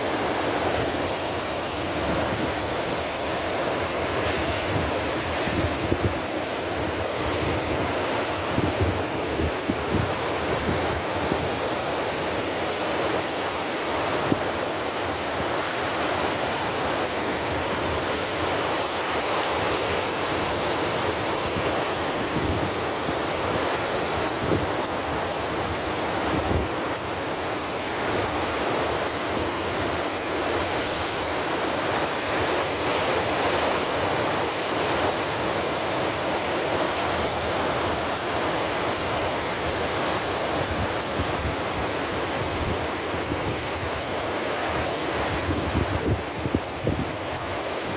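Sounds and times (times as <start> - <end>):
ocean surf washing: 0.0 - 47.9
wind buffeting microphone: 38.8 - 47.9.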